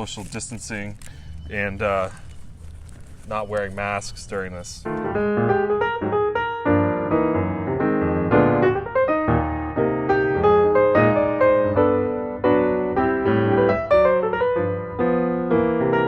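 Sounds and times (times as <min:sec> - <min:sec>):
piano music: 0:04.8 - 0:16.0.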